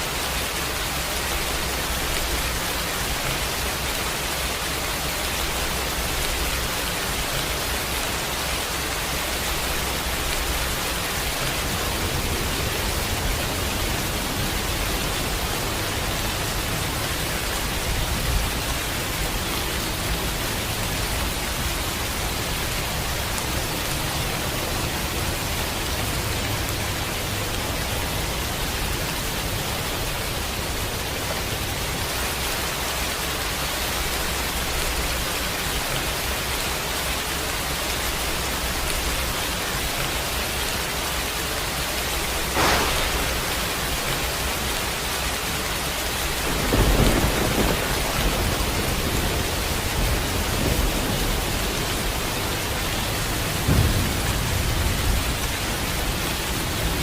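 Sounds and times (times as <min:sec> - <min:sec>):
steady rain: 0:00.0 - 0:57.0
low rolling thunder: 0:42.3 - 0:45.0, 0:46.2 - 0:57.0
thunder crack: 0:42.4 - 0:44.7, 0:46.4 - 0:52.2, 0:53.6 - 0:56.2.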